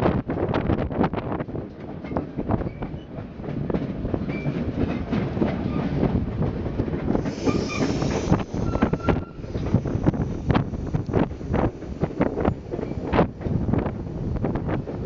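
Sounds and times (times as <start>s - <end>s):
train wheels clattering over rails: 1.3s - 15.0s
high wheel squeals: 7.2s - 10.6s.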